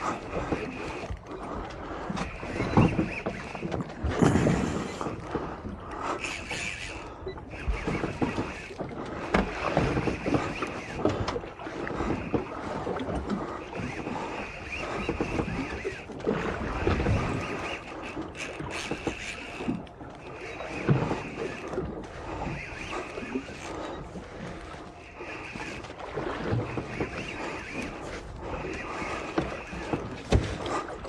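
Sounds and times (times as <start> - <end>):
water slapping against hull: 0.0 - 31.0
wind on microphone: 0.0 - 31.0.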